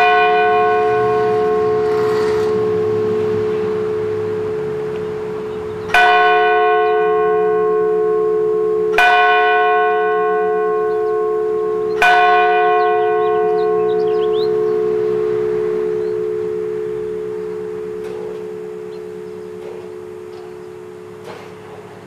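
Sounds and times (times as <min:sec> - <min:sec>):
church bell tolling: 0:00.0 - 0:22.0.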